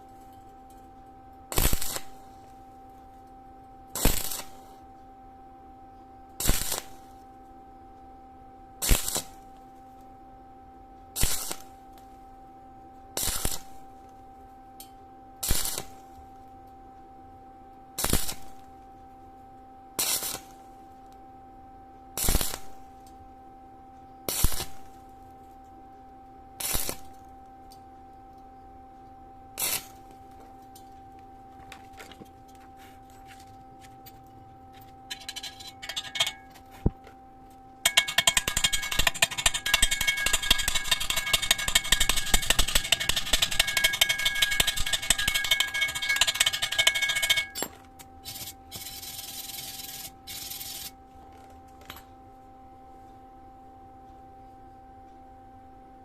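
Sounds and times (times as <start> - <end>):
steady humming tone: 0.0 - 56.0
welding crackling on sheet metal: 37.9 - 47.6.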